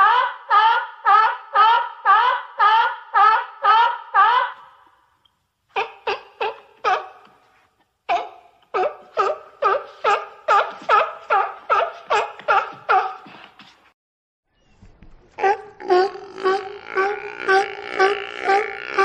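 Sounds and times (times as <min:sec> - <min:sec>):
sea lion barking: 0:05.7 - 0:07.4, 0:08.1 - 0:13.5, 0:15.4 - 0:19.0.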